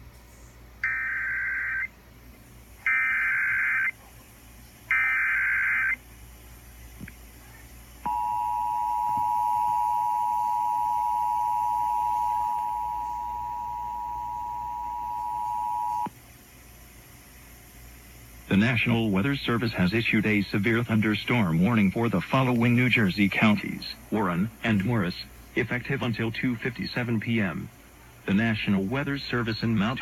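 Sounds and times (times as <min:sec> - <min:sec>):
two-tone attention signal: 0:08.1 - 0:16.1
warbling data tones: 0:08.1 - 0:16.1.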